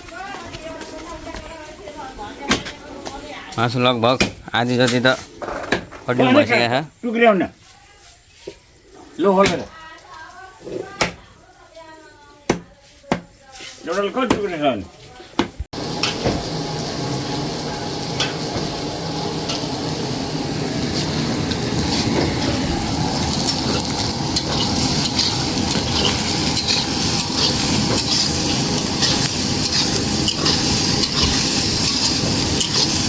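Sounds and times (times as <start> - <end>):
meat sizzling in a pan: 15.8 - 33.0.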